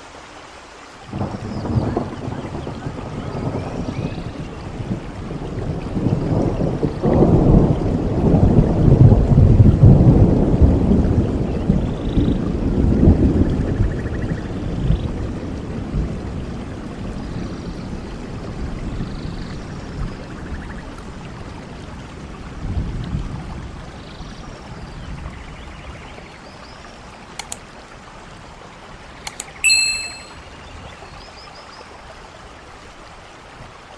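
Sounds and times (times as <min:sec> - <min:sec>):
stream water running: 0:00.0 - 0:01.1
sharp clicks: 0:27.4 - 0:27.6, 0:29.3 - 0:30.4
faint high chirps: 0:29.3 - 0:30.5.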